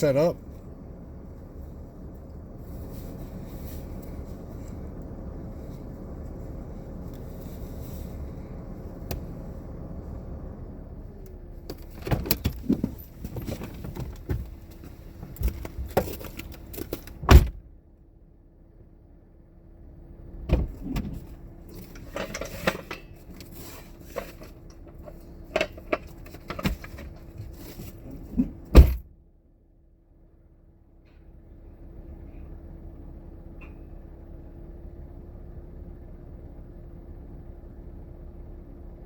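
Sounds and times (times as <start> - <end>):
gear clanking and rattling: 11.3 - 17.7, 20.4 - 29.1.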